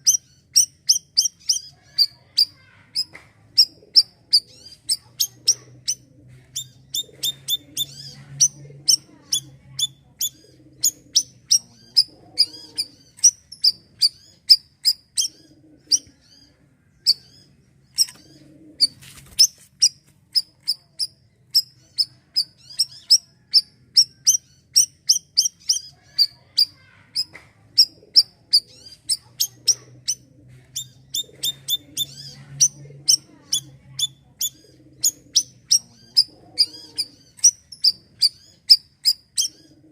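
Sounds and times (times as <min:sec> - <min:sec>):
bird chirping high: 0:00.0 - 0:39.9.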